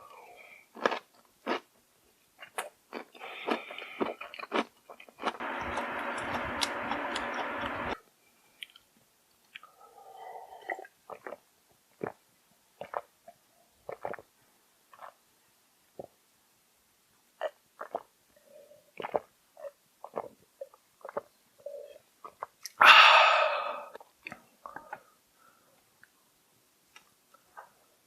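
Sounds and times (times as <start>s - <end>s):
person chewing and smacking: 0.7s - 1.7s, 2.4s - 7.4s, 10.6s - 11.4s, 12.8s - 13.1s, 13.8s - 14.3s, 17.4s - 18.1s, 19.0s - 21.3s.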